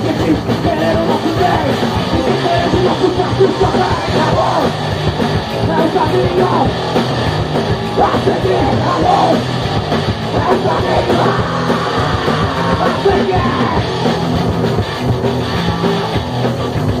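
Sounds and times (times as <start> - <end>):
punk rock band playing: 0.0 - 17.0
person yelling vocals: 12.8 - 13.8.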